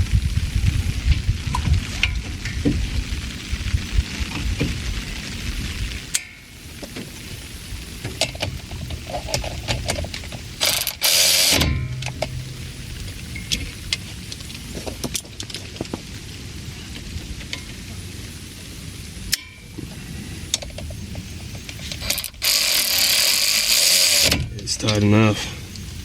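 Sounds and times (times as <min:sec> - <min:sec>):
loud burst of noise: 0:10.3 - 0:15.3
ratchet wrench clicking: 0:10.6 - 0:12.3, 0:21.7 - 0:24.4.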